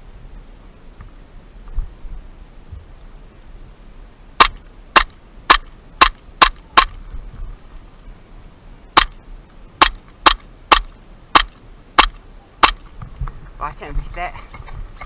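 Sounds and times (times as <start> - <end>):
airsoft gun shots: 4.4 - 7.0, 9.0 - 9.2, 9.8 - 12.8.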